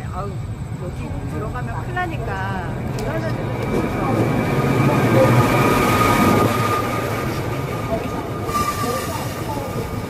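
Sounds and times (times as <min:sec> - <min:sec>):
train rumbling past: 0:00.0 - 0:10.0
wheels squealing: 0:03.6 - 0:10.0.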